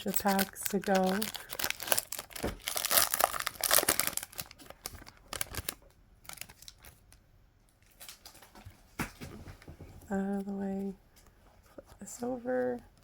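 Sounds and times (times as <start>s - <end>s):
trading cards rustling and clicking: 0.0s - 6.9s
foil wrapper crinkling: 0.0s - 7.2s.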